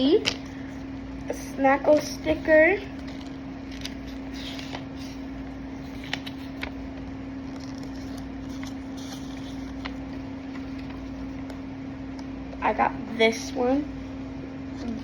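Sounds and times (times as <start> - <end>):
steady low hum: 0.0 - 15.0
packaging rustling: 1.9 - 11.7.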